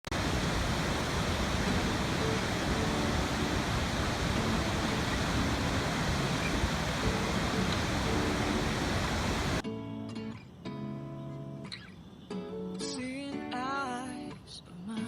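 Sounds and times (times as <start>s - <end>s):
rushing water: 0.0s - 9.6s.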